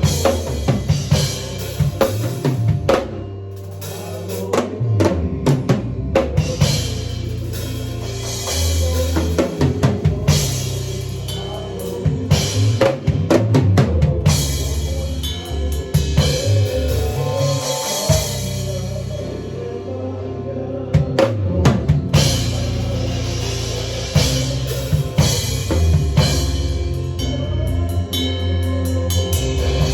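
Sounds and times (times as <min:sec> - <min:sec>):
drum kit playing: 0:00.0 - 0:19.6, 0:20.9 - 0:29.9
held bass notes: 0:00.0 - 0:29.9.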